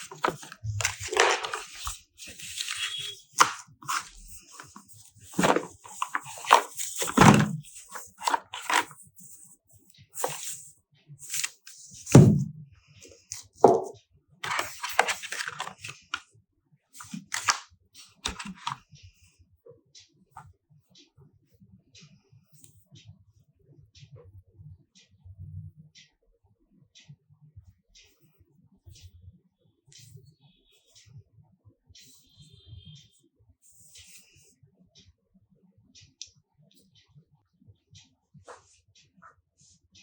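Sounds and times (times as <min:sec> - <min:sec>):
plastic and cardboard crinkling: 0:00.0 - 0:09.5, 0:10.2 - 0:12.5, 0:13.3 - 0:16.2, 0:17.0 - 0:18.8.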